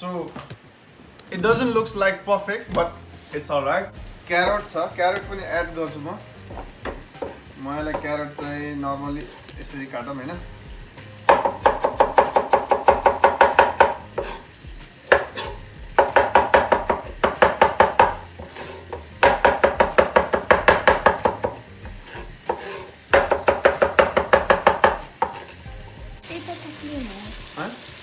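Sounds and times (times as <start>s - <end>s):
knife chopping on cutting board: 6.5s - 8.6s, 11.0s - 25.6s.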